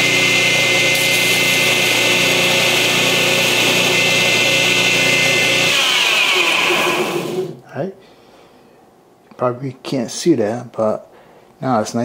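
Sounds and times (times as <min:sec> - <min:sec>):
belt grinder grinding steel: 0:00.0 - 0:07.6.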